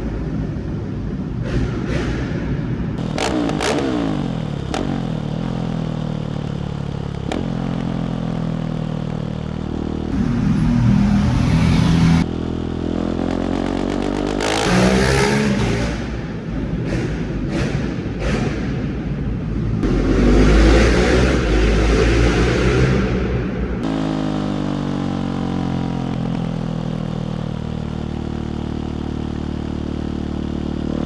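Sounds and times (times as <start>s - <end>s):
exhaust cracks: 0.0s - 12.3s, 13.2s - 24.2s
motorcycle engine revving in tunnel: 0.0s - 31.0s.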